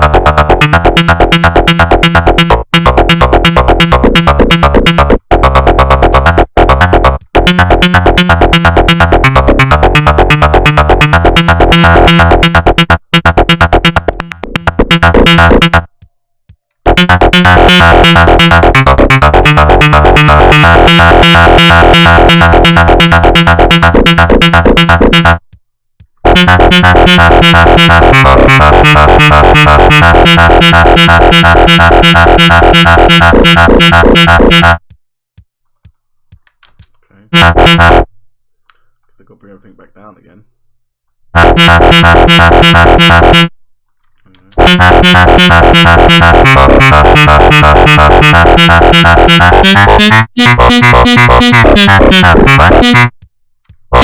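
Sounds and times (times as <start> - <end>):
fast synthesizer arpeggio: 0.0 - 15.9, 16.9 - 25.4, 26.3 - 34.8, 37.4 - 38.1, 41.4 - 43.5, 44.6 - 53.1.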